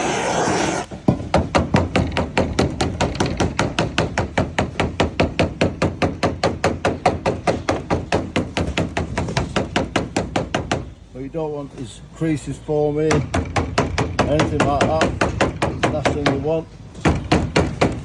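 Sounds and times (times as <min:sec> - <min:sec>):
gas torch roaring: 0:00.0 - 0:01.0
tool tapping on sheet lead: 0:13.1 - 0:18.0.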